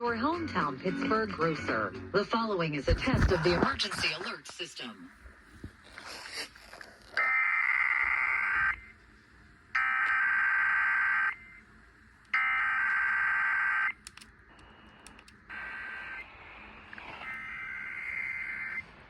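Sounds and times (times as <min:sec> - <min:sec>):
radio hiss: 0:02.8 - 0:19.0.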